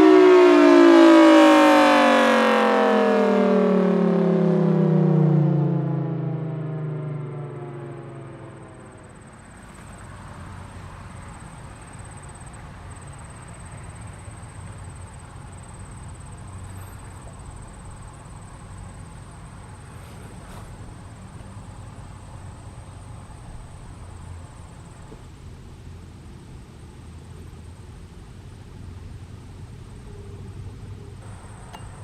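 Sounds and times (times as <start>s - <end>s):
insects trilling: 9.0s - 25.2s.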